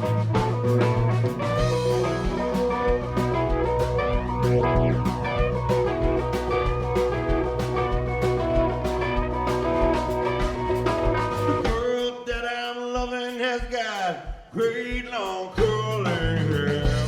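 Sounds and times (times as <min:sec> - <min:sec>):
guitar notes bending downward: 0:00.0 - 0:11.9
blues-rock band playing live: 0:00.0 - 0:12.5, 0:15.5 - 0:17.0.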